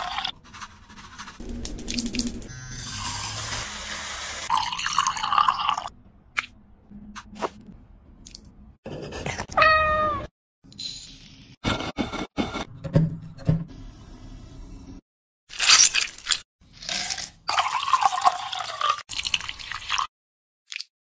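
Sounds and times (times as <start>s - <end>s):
cat meowing: 9.6s - 10.3s.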